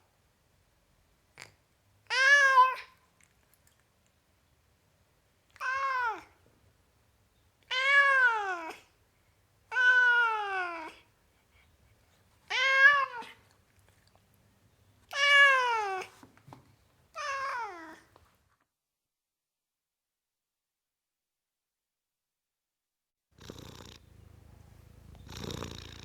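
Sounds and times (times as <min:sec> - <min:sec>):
cat meowing: 0:02.1 - 0:03.0, 0:05.6 - 0:06.3, 0:07.7 - 0:08.9, 0:09.7 - 0:11.0, 0:12.5 - 0:13.4, 0:15.1 - 0:16.1, 0:17.1 - 0:18.1.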